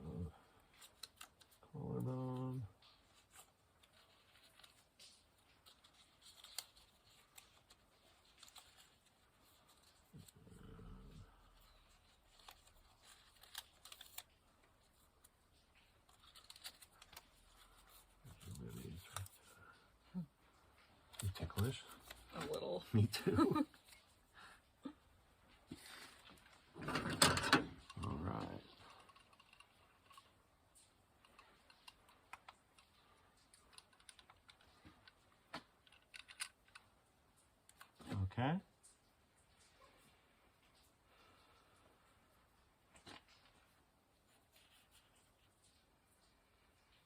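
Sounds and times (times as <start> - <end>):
faint small clicks and taps: 28.8 - 42.1.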